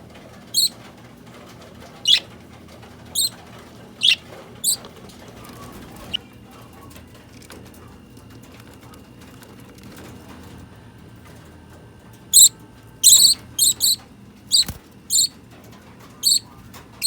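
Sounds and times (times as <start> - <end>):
budgerigar high-pitched chirps: 0.5 - 0.8, 2.0 - 2.3, 3.1 - 3.4, 4.0 - 4.8, 12.3 - 15.3, 16.2 - 16.5
budgerigars chattering: 0.5 - 0.8, 2.0 - 2.3, 3.1 - 3.4, 4.0 - 4.8, 12.3 - 15.3, 16.2 - 16.5.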